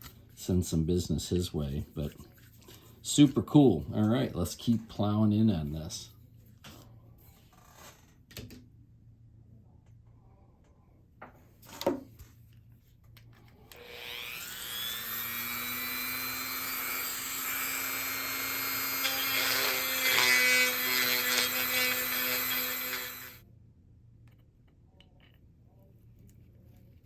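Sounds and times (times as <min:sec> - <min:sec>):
power tool cutting wood: 0:13.7 - 0:23.4.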